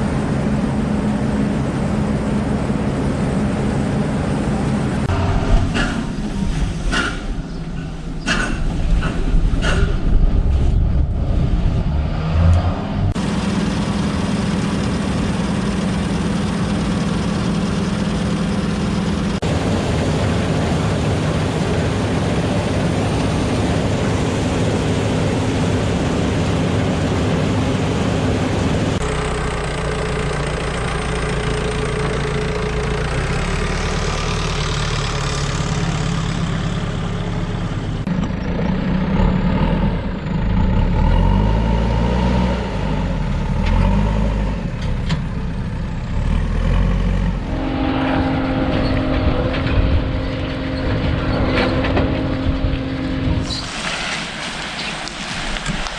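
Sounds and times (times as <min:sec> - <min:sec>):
heavy farm machine engine: 0:00.0 - 0:55.9.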